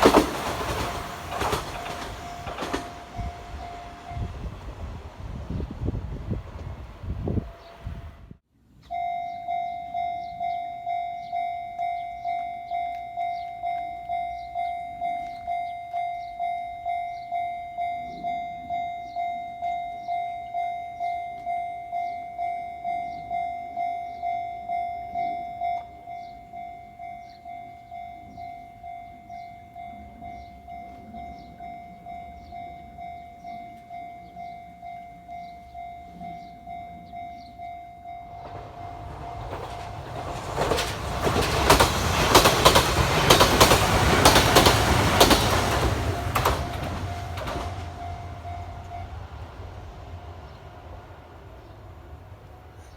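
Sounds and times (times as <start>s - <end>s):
level crossing electronic bell: 9.0s - 39.6s.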